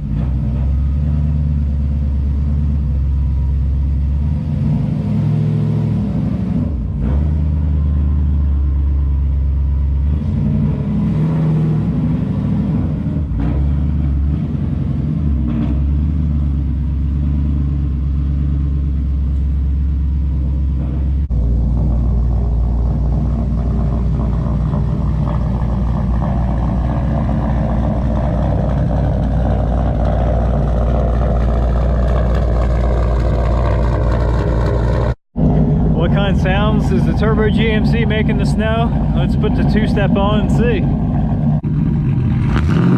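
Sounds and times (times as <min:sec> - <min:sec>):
pickup truck engine running: 0:00.0 - 0:42.9
turbo whine: 0:19.4 - 0:42.9.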